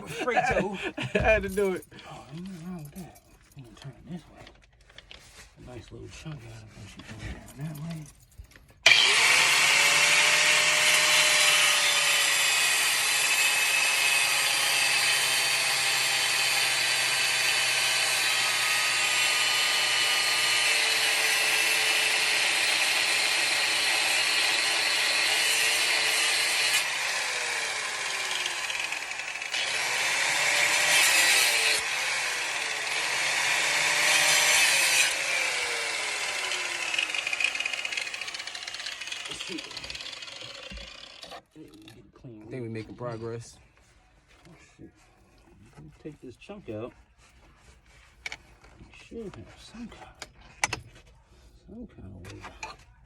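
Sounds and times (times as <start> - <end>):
power tool cutting metal: 8.8 - 41.4.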